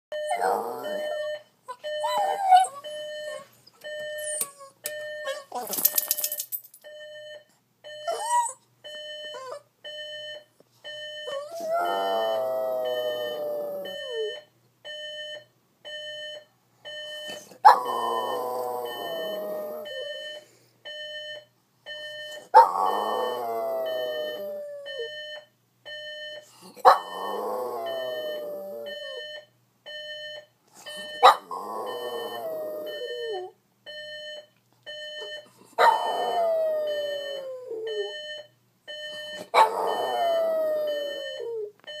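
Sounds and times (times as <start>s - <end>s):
alarm clock beeping: 0.2s - 8.2s, 8.8s - 42.0s
dog howling: 11.3s - 14.4s, 17.6s - 20.1s, 22.6s - 25.1s, 26.9s - 29.2s, 31.2s - 33.6s, 35.8s - 38.1s, 39.5s - 41.7s.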